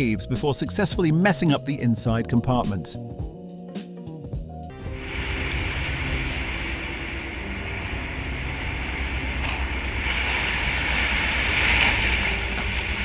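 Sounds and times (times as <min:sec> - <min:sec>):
rushing sea water: 0:04.8 - 0:13.0
steady low rumble: 0:04.8 - 0:13.0.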